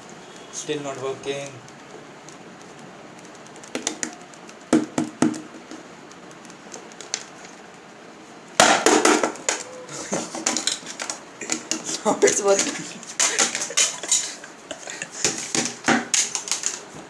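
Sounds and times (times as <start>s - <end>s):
small hard objects clicking: 0.2s - 8.0s, 8.6s - 16.9s
objects clattering: 8.6s - 17.0s.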